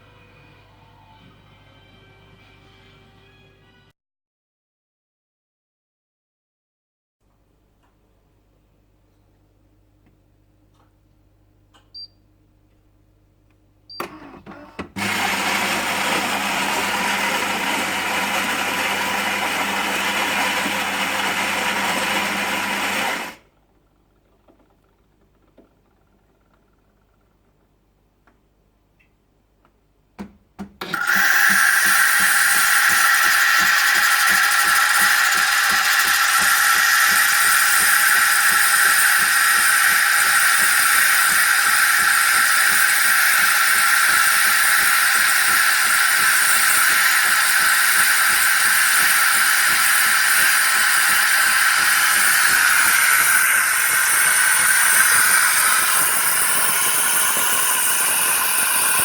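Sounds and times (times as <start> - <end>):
coffee machine hissing whir: 14.0 - 27.8, 30.8 - 59.0
coffee machine clicks: 30.2 - 59.0.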